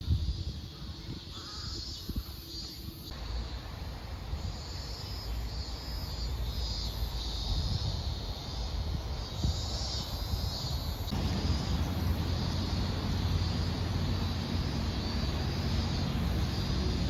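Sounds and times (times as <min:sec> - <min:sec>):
cicadas singing: 0:00.0 - 0:17.0
steady low rumble: 0:11.1 - 0:17.0.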